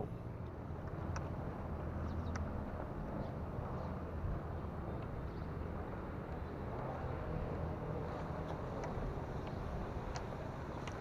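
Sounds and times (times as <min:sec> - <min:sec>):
engine humming: 0:00.0 - 0:11.0
faint ticks: 0:08.4 - 0:11.0.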